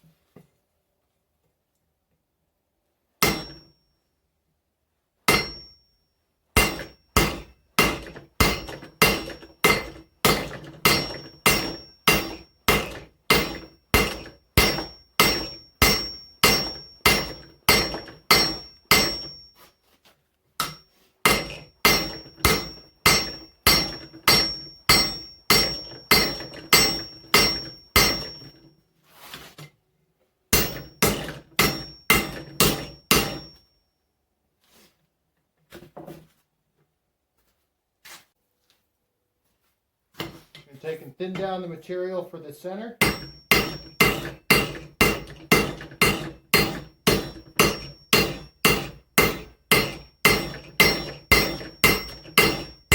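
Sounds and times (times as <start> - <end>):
hammer striking steel on anvil: 3.2 - 3.8, 5.3 - 5.8, 6.6 - 19.6, 20.6 - 28.6, 30.5 - 33.7, 43.0 - 52.9.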